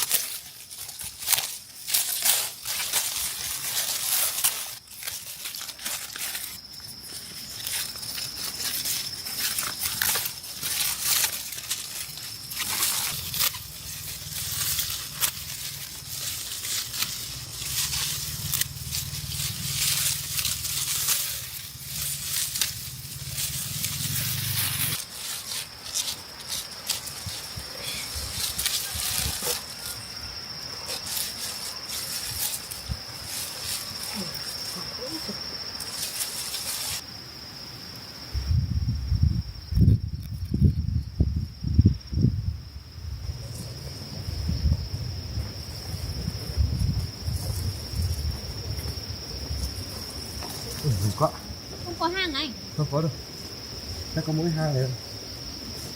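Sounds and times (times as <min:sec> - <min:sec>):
dry plant stalks rustling: 0:00.0 - 0:37.1
high insect drone: 0:00.0 - 0:55.9.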